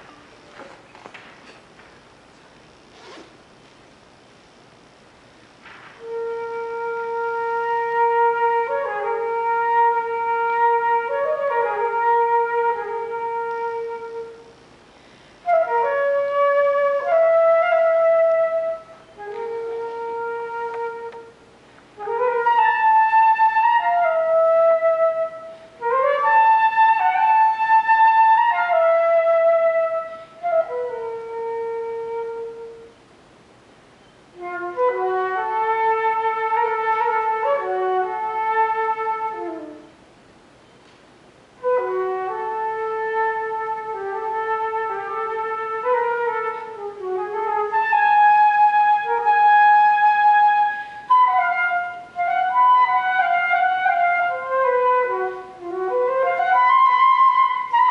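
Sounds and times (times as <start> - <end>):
solo flute playing classical piece: 6.0 - 14.6, 15.4 - 33.0, 34.3 - 40.0, 41.6 - 57.9.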